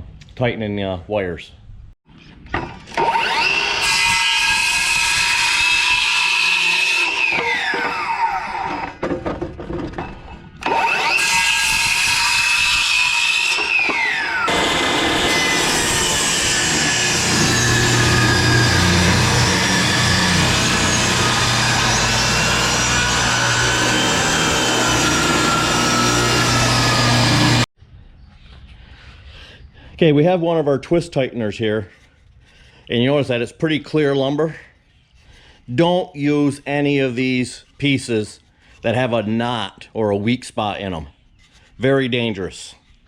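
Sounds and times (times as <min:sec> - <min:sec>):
electric saw cutting wood: 0:02.8 - 0:09.0, 0:10.6 - 0:27.7.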